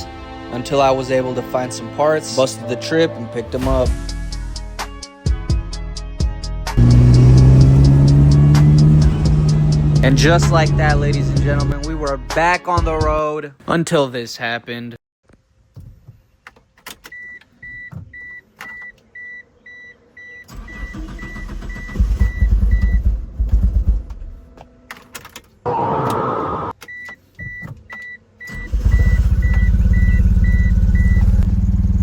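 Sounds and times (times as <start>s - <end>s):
car engine cranking and running: 6.8s - 11.8s, 20.5s - 24.4s, 28.4s - 32.0s
car warning chime beeping: 6.8s - 11.8s, 26.8s - 31.4s.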